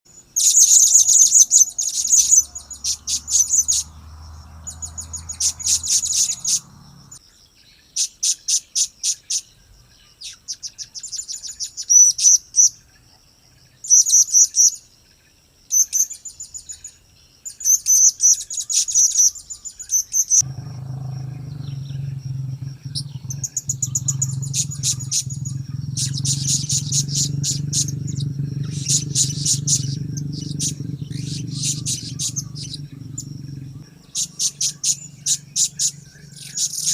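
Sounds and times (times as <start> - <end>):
steady low hum: 20.4 - 36.8.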